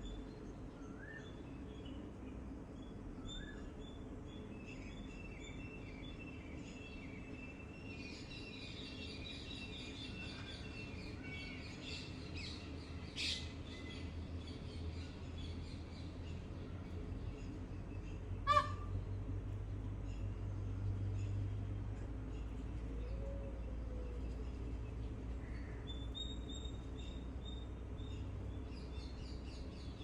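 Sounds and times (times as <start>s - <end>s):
low background rumble: 0.0s - 30.0s
small birds chirping: 0.0s - 30.0s.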